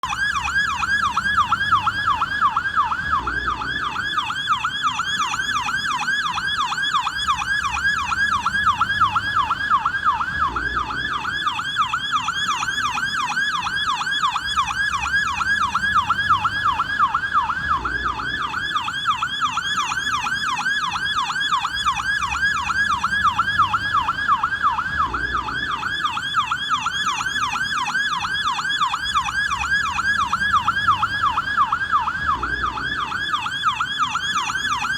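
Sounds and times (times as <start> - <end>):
police siren yelping: 0.0 - 34.9.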